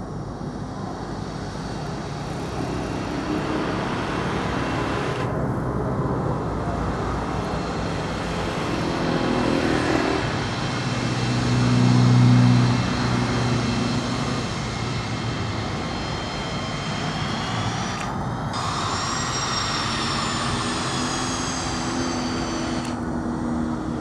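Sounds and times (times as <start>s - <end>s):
distant jet engine whine: 0.0s - 24.0s.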